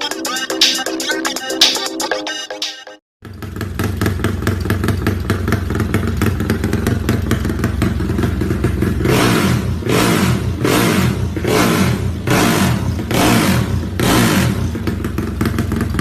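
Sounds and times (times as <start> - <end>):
motorcycle engine revving: 3.2 - 16.0.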